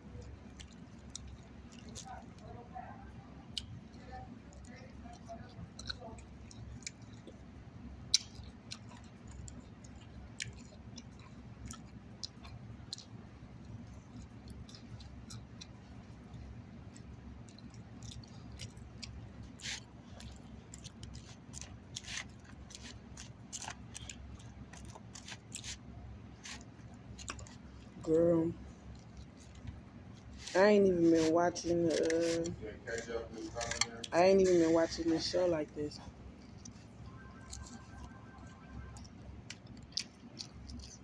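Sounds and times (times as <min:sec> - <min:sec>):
person chewing: 0:00.1 - 0:02.5, 0:03.5 - 0:30.6, 0:36.0 - 0:41.0.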